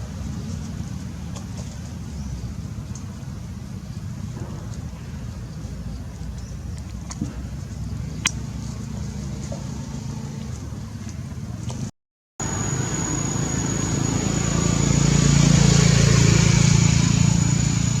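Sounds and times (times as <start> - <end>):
vehicle engine humming: 0.0 - 18.0
thin high whine: 12.4 - 18.0.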